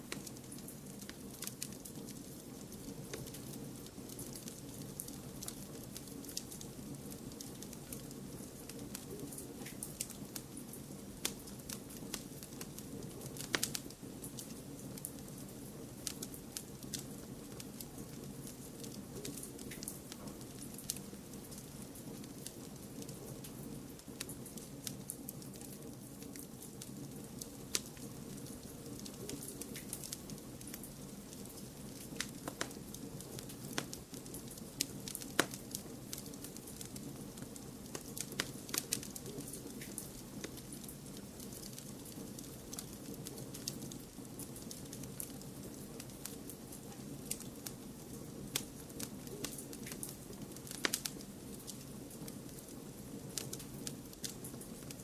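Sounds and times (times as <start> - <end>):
wood fire crackling: 0.0 - 55.0
sharp fire pops: 31.5 - 40.8, 48.5 - 52.6.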